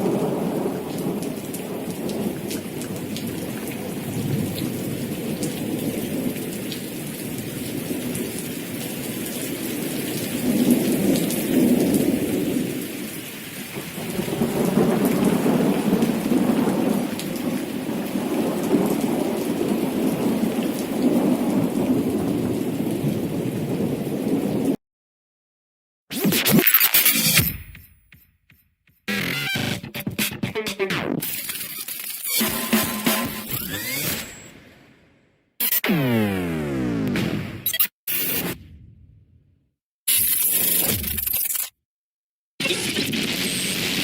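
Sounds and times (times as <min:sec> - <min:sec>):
thunder rolling: 0:00.0 - 0:13.1, 0:13.8 - 0:24.8
heavy rain: 0:00.0 - 0:24.8, 0:31.3 - 0:34.8, 0:43.2 - 0:44.0.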